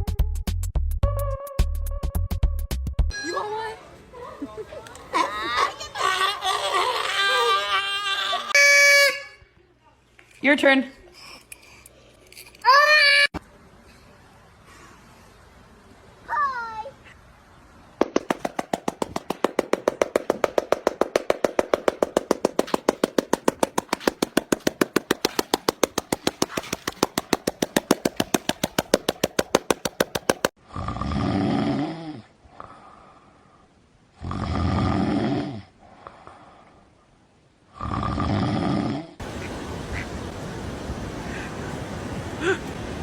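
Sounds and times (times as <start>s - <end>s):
rapid even clicks: 18.0s - 30.6s
seal snoring-like calls: 37.8s - 39.2s.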